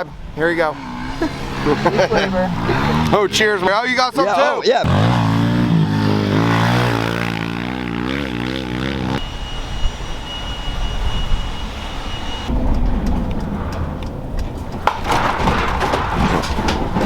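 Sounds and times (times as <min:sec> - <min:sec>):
vehicle running with high whine: 0:00.2 - 0:03.8, 0:04.9 - 0:15.0
small engine revving: 0:00.8 - 0:03.4, 0:04.8 - 0:09.5.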